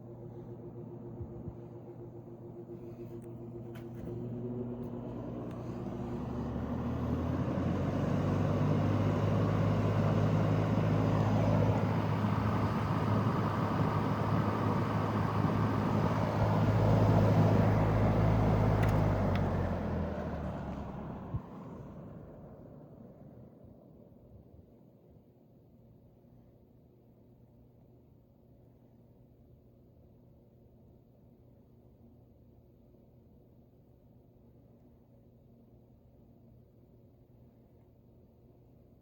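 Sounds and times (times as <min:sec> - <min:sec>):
box fan running: 0:00.0 - 0:23.2.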